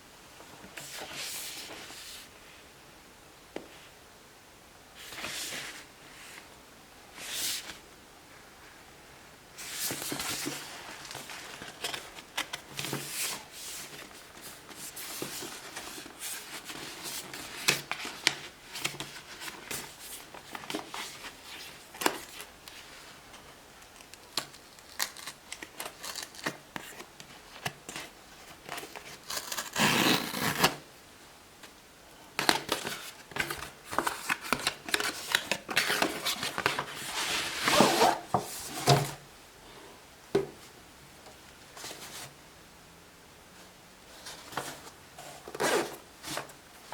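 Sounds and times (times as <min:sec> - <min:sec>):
packaging tearing: 0:29.2 - 0:30.8
packaging rustling and crinkling: 0:32.4 - 0:39.2.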